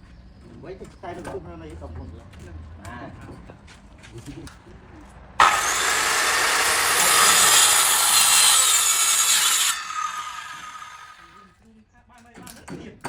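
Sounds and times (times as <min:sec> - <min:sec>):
power tool cutting with whine: 0:05.4 - 0:11.4.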